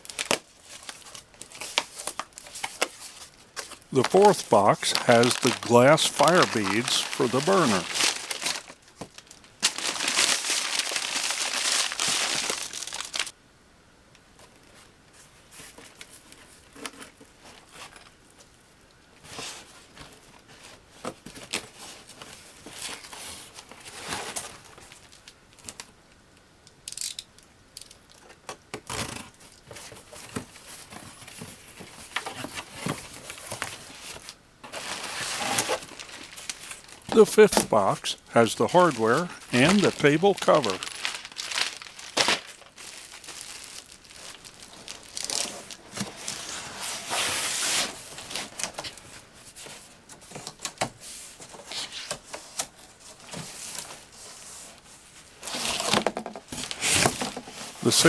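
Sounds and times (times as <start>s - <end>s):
cardboard tearing and crumpling: 0.0s - 13.3s, 28.8s - 54.5s, 55.3s - 58.0s
packaging rustling and crinkling: 0.0s - 13.3s, 19.2s - 25.9s, 28.1s - 58.0s.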